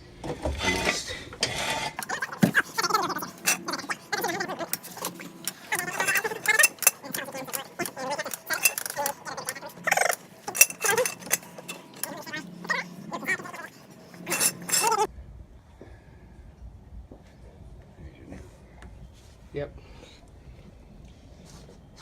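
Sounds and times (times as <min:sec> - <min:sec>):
indistinct voices: 0:00.4 - 0:15.1
metallic clicks and clinks: 0:04.7 - 0:12.2, 0:14.3 - 0:15.1.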